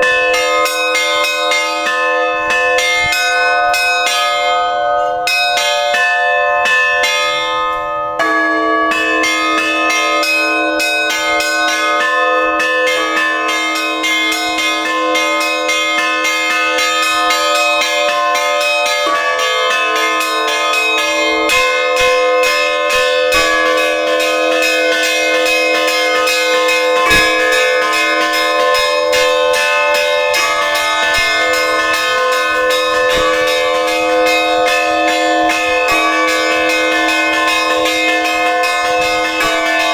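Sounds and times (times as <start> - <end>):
deep bells ringing: 0.0 - 39.9
small bells struck rapidly: 12.3 - 39.9
low bell tone: 18.9 - 37.0.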